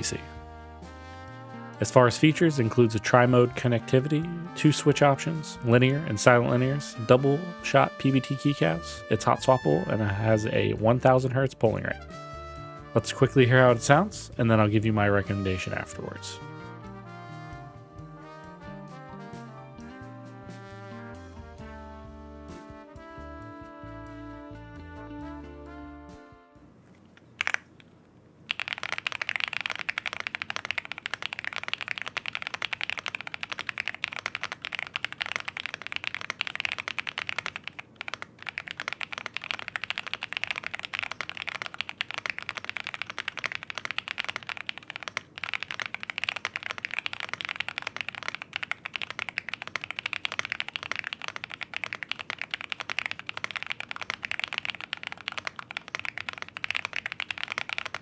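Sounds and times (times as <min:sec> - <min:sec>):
fast mechanical keyboard typing: 0:01.8 - 0:10.7, 0:27.4 - 0:27.7, 0:28.5 - 0:58.0.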